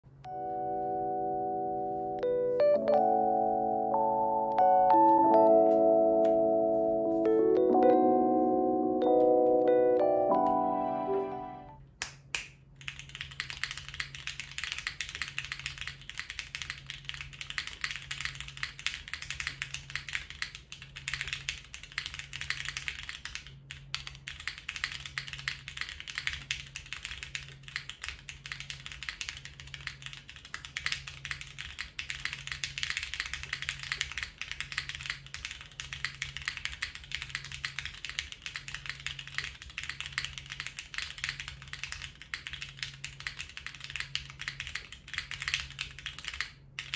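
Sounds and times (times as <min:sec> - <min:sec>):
fast mechanical keyboard typing: 0:12.8 - 0:46.9.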